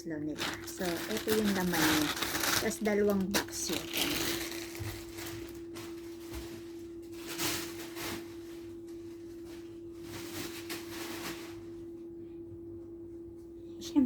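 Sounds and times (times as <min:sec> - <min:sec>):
handling rustles: 0:00.4 - 0:08.7.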